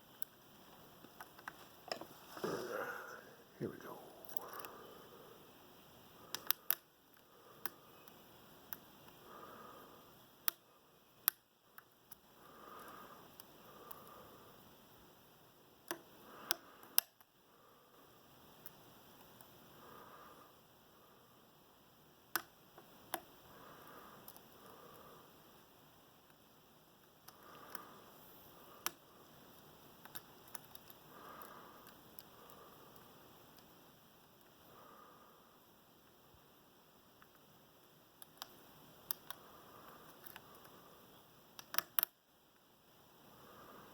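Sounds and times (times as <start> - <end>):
soft handling rustle: 0.7 - 2.7
small metallic lock pick clicks: 41.6 - 42.2.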